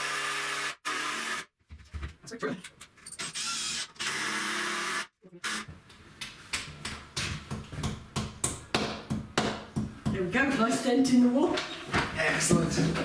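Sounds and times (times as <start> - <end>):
power drill driving screw: 0.0 - 1.5, 3.2 - 5.7.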